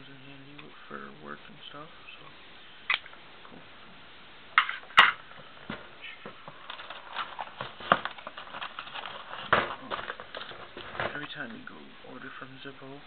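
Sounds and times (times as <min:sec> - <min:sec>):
packaging rustling: 0:05.3 - 0:11.6.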